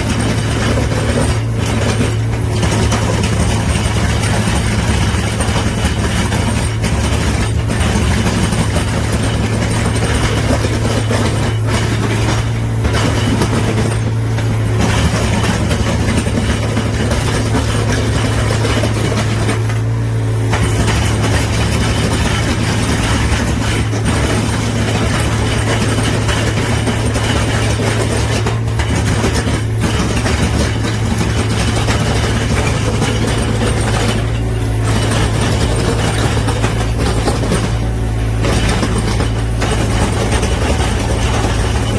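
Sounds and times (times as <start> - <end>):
heavy engine drone: 0.0 - 41.9
rough grinding of concrete: 0.0 - 41.9.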